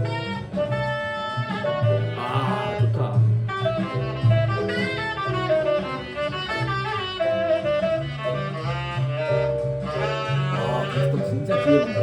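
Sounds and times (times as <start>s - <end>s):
double bass: 0.0s - 12.0s
horn melody: 9.9s - 12.0s.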